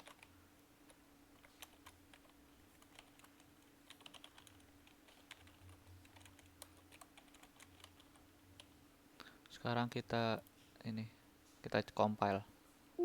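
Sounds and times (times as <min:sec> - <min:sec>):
typing on keyboard: 0:00.0 - 0:00.3, 0:01.4 - 0:08.7.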